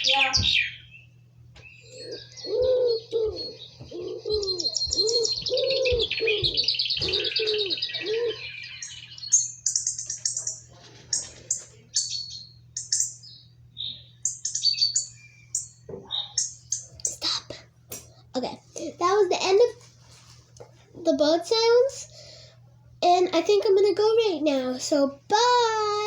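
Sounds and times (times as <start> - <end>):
low rounded bird calls: 0.0 - 10.7
birds chirping trills: 0.0 - 19.8.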